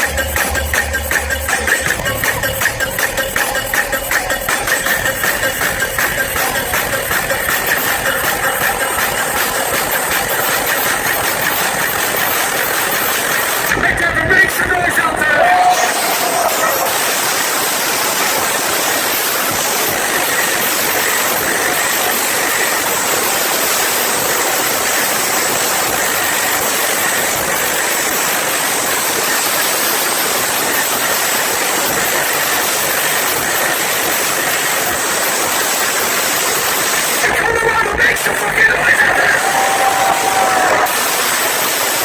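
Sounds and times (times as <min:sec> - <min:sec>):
crowd cheering and screaming: 0:14.7 - 0:21.7, 0:38.6 - 0:42.0.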